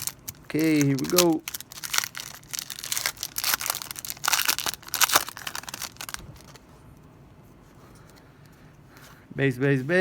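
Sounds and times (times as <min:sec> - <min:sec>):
wrapper tearing and crinkling: 0:00.0 - 0:06.6.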